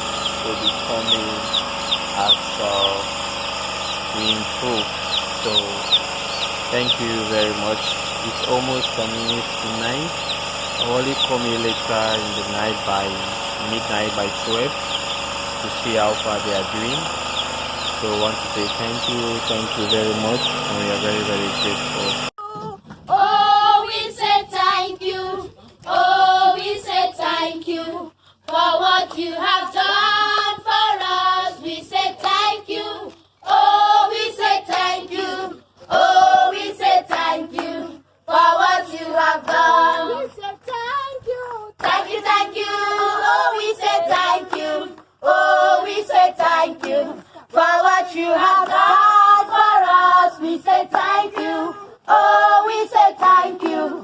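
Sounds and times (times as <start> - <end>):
women and children singing: 22.4 - 54.0.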